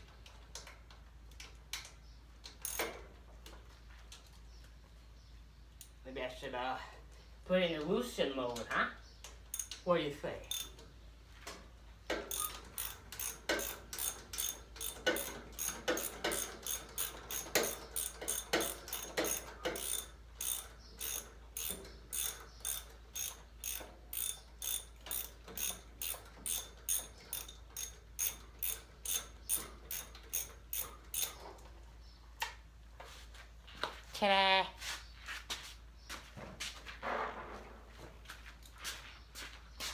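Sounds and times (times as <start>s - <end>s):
ratchet wrench clicking: 2.6s - 3.0s, 9.5s - 9.8s, 10.4s - 10.8s, 12.1s - 31.4s.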